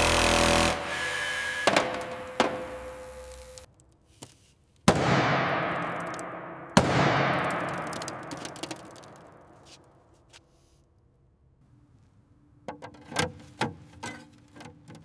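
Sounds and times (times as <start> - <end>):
sharp bangs with rushing tail: 4.9 - 8.4.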